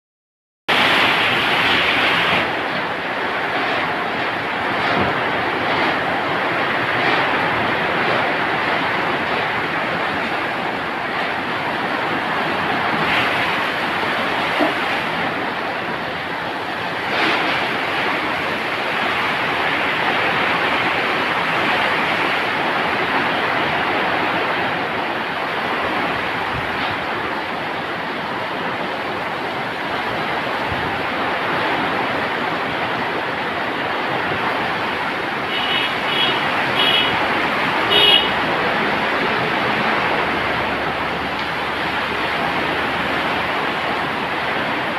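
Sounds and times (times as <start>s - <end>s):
heavy rain: 0.7s - 44.9s
strong wind: 0.7s - 44.9s.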